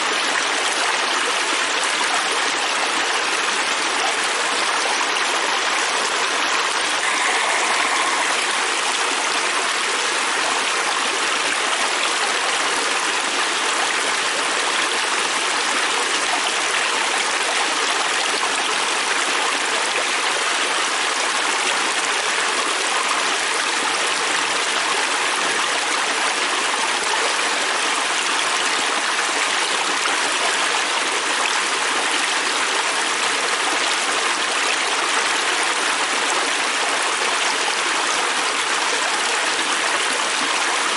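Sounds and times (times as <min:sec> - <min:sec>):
river rushing over rocks: 0:04.2 - 0:11.3.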